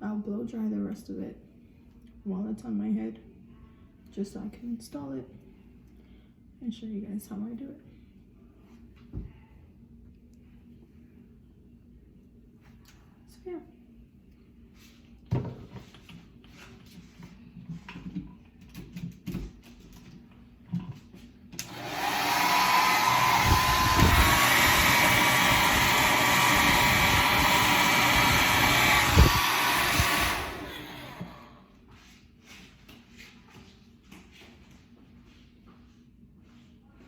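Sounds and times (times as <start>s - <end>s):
hair dryer blowing: 21.6s - 31.7s.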